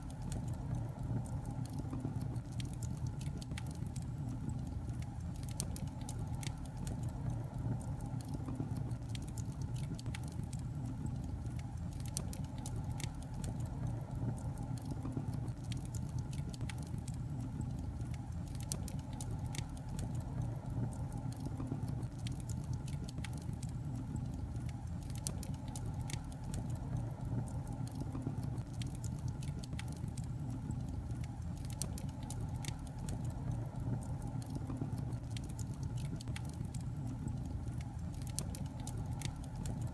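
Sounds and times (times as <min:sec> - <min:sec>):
fire crackling and popping: 0:00.0 - 0:39.9
fire rumbling: 0:00.0 - 0:39.9.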